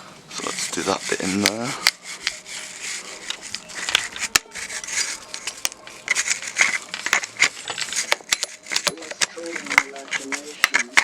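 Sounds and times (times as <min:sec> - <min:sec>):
rubbing and scrubbing a bike frame: 0:00.0 - 0:11.0.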